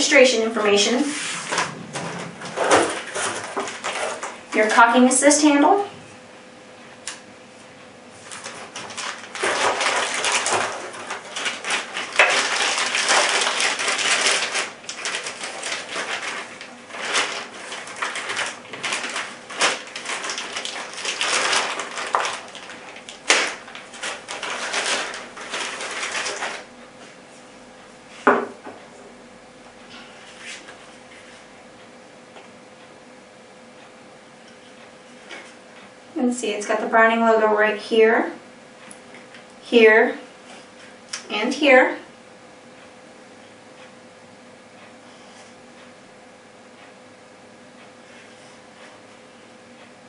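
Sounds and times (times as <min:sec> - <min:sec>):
packaging rustling and crinkling: 0:01.2 - 0:04.4, 0:08.2 - 0:26.7.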